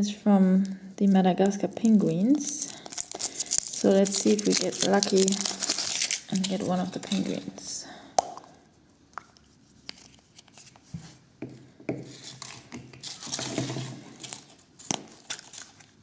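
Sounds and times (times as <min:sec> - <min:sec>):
foil wrapper crinkling and tearing: 0:01.4 - 0:07.3, 0:14.2 - 0:16.0.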